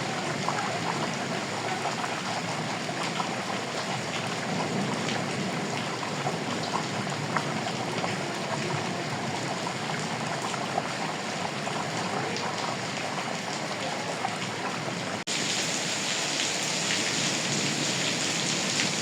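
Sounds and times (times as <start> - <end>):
steady rain: 0.0 - 19.0.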